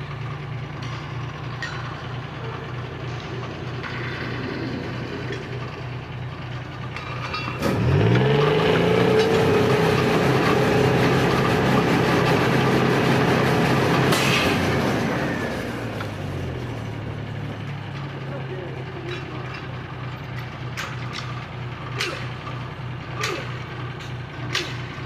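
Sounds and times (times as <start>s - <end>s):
engine revving: 7.0s - 19.6s.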